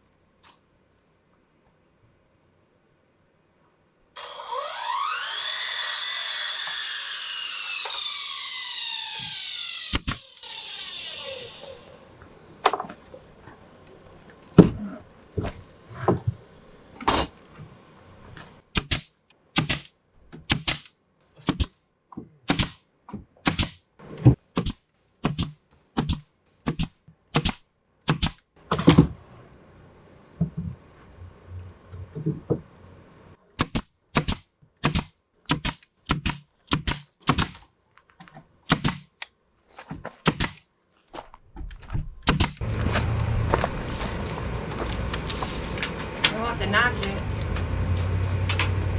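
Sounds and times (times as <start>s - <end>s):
hammer driving nails into wood: 18.7s - 21.8s, 22.4s - 22.8s, 23.4s - 23.8s, 24.5s - 29.1s, 33.6s - 37.7s, 38.7s - 39.3s, 40.2s - 40.6s, 42.2s - 42.6s.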